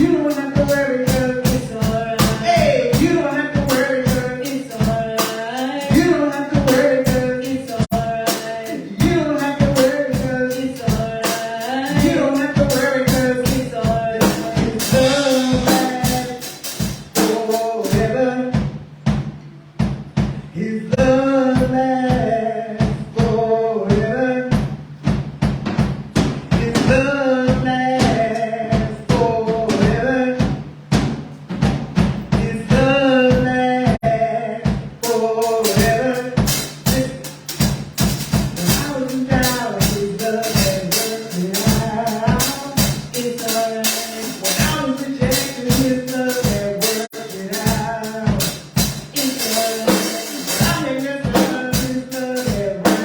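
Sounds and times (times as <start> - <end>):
person singing melody: 0.0 - 18.6, 38.4 - 53.0
gospel band with drums and bass: 0.0 - 53.0.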